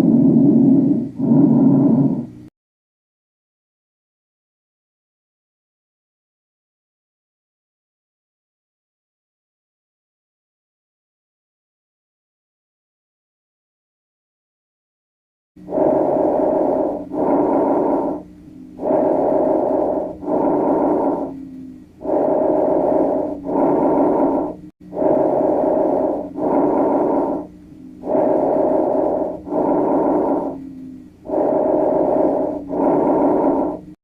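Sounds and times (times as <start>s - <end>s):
breathing in and out: 0.0s - 2.5s, 15.6s - 34.0s.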